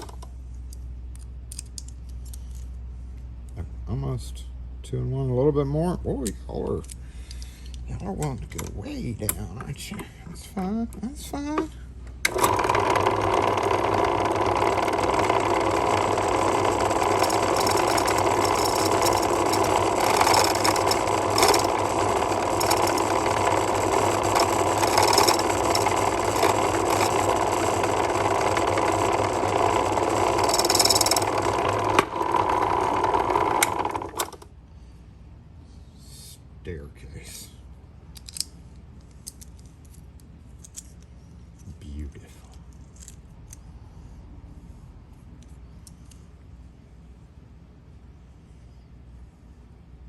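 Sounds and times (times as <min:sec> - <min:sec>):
cutter scraping key blank: 0:12.3 - 0:32.4
key-cutting machine running: 0:12.3 - 0:34.4.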